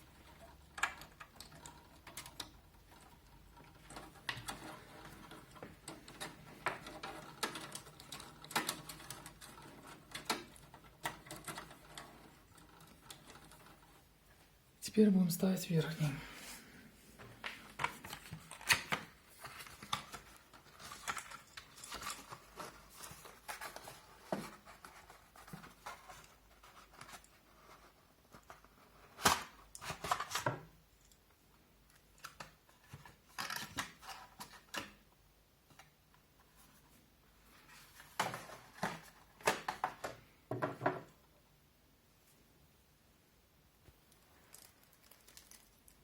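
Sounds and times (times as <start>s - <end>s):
computer fan handling clicks and scrapes: 0.1s - 14.1s.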